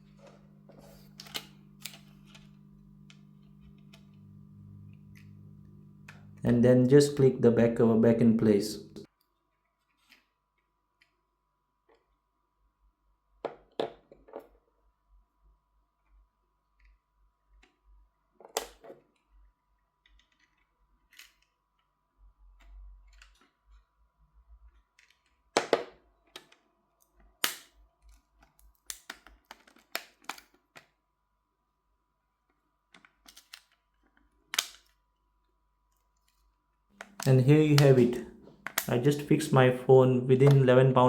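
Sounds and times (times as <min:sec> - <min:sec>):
plastic clips snapping: 0:01.1 - 0:06.5, 0:37.0 - 0:38.9.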